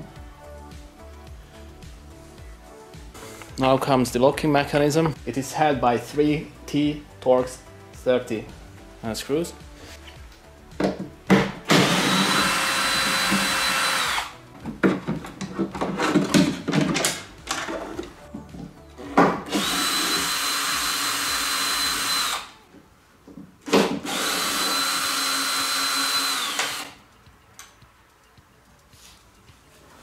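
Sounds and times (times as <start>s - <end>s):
cordless drill whining: 11.7s - 14.4s, 19.5s - 22.6s, 23.7s - 27.0s
handling clicks and knocks: 14.6s - 19.4s.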